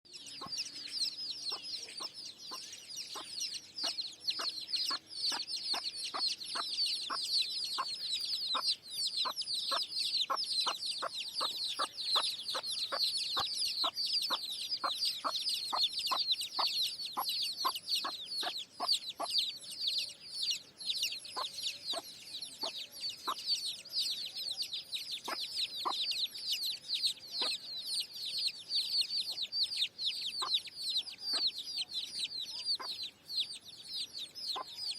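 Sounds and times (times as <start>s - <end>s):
chicks chirping and peeping: 0.1s - 34.9s
chicken clucks: 1.4s - 19.5s, 27.3s - 27.7s, 29.3s - 33.1s, 34.5s - 34.9s.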